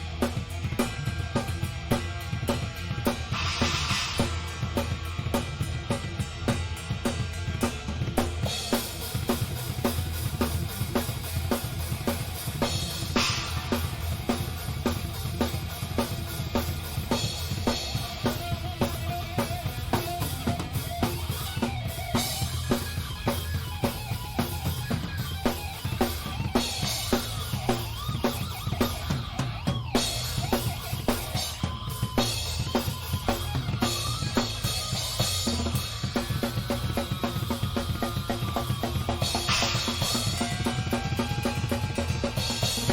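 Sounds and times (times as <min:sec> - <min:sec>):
rock band playing: 0:00.0 - 0:42.9
cymbal crashes: 0:03.2 - 0:06.2, 0:12.9 - 0:15.1, 0:39.2 - 0:42.9.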